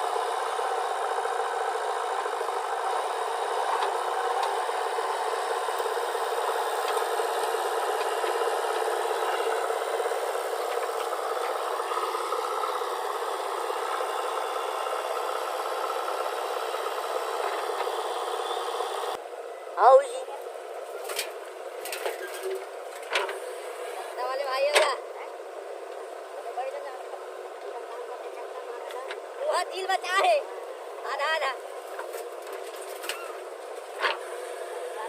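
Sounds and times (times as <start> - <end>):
diesel machinery rattling: 0.0 - 19.2.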